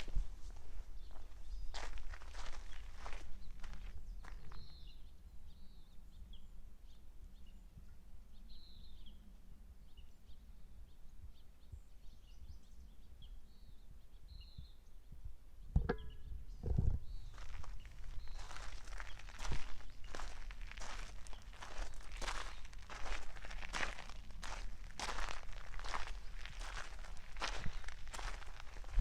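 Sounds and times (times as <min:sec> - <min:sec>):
small birds chirping: 0:00.0 - 0:29.0
steady low rumble: 0:16.9 - 0:29.0
footsteps: 0:17.3 - 0:29.0.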